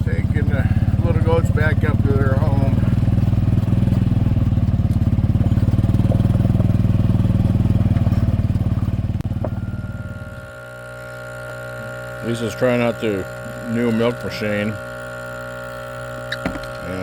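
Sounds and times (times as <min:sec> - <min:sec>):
small petrol engine running: 0:00.0 - 0:17.0
steady hum with high whine: 0:08.7 - 0:17.0.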